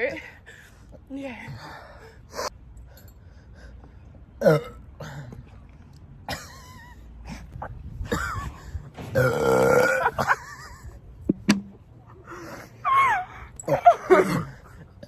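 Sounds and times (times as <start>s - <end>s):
woman burping: 9.2s - 10.4s.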